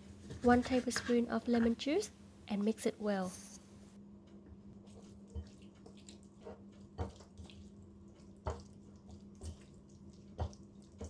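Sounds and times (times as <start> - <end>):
faint steady hum: 0.0 - 11.0
soft wet squelches: 4.2 - 11.0.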